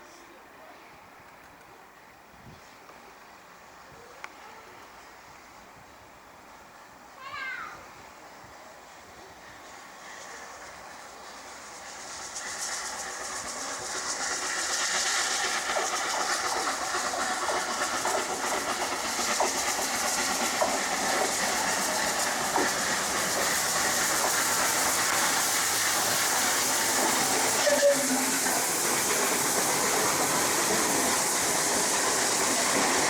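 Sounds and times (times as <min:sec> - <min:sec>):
steam locomotive hissing: 0:02.6 - 0:33.0
wheels clicking on rails: 0:11.8 - 0:33.0.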